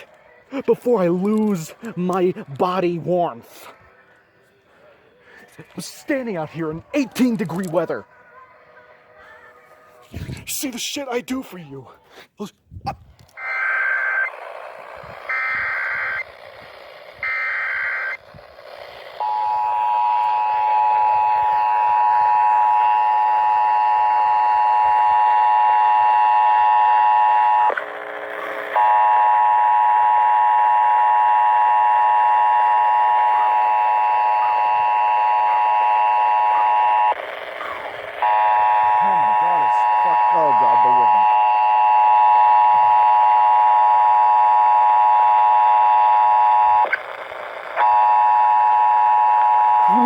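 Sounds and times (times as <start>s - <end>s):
digital data bursts: 13.4s - 21.0s, 36.5s - 41.3s, 49.8s - 50.0s.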